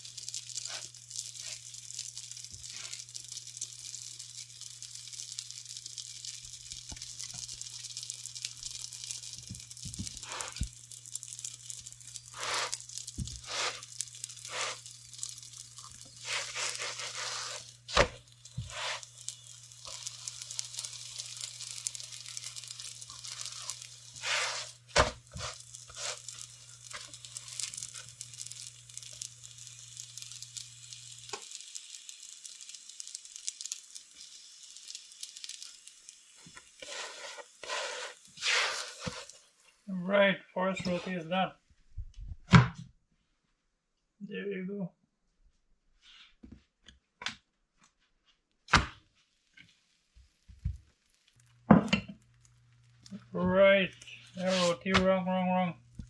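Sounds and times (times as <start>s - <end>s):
scraping strokes on griddle: 0.0s - 6.1s, 7.3s - 31.6s, 32.4s - 39.8s, 53.8s - 54.8s
roti sizzling on a griddle: 0.0s - 41.4s, 46.0s - 46.5s, 47.9s - 56.0s.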